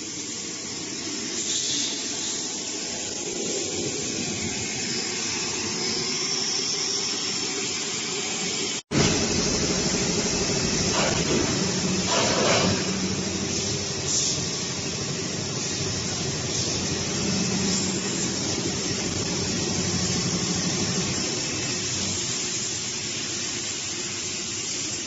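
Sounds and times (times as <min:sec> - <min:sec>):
industrial machinery hiss: 0:00.0 - 0:25.0
machinery low hum: 0:08.9 - 0:21.9.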